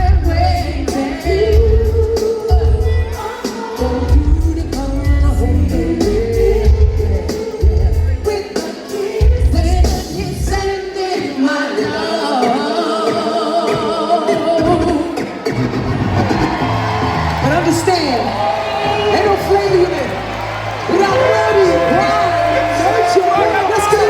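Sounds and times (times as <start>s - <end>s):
heavy bass beat: 0.0s - 8.4s
person singing: 0.0s - 15.5s.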